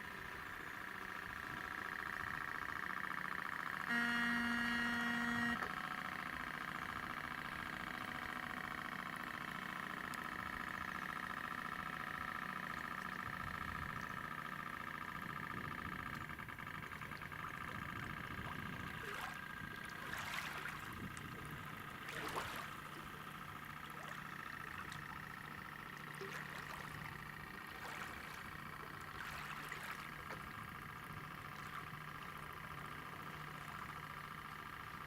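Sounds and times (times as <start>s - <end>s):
model boat motor whining: 0.0s - 35.0s
faint water sounds: 9.8s - 35.0s.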